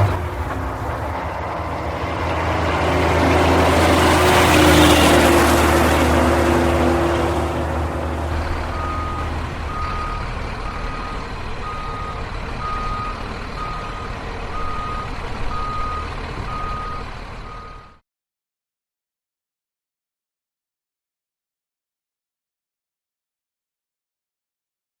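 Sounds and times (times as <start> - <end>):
truck engine running: 0.0 - 18.0
truck reversing alarm beeping: 0.0 - 18.0.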